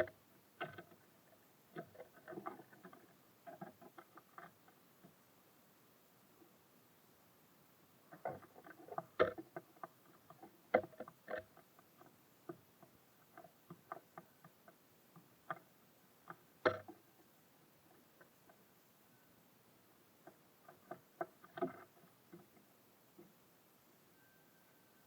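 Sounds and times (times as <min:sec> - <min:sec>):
birds pecking on feeder: 0:00.0 - 0:05.2, 0:08.1 - 0:18.6, 0:19.8 - 0:23.3.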